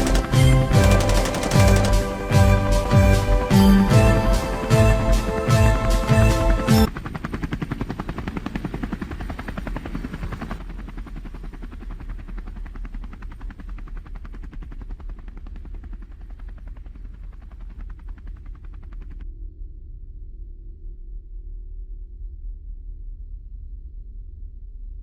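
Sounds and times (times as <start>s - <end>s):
fast mechanical chopping rhythm: 0.0s - 6.9s.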